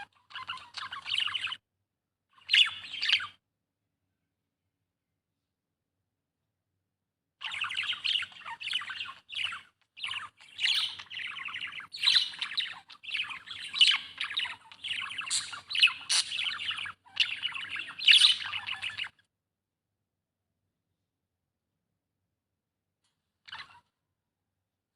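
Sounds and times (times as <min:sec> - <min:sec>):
budgerigar chirping and warbling: 0:00.0 - 0:01.6, 0:02.4 - 0:03.4, 0:07.4 - 0:19.2, 0:23.5 - 0:23.9.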